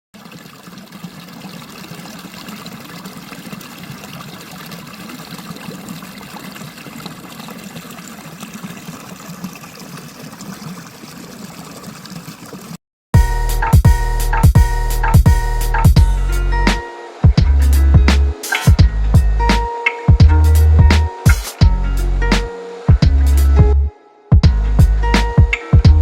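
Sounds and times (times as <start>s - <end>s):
trickling running water: 0.2s - 19.2s.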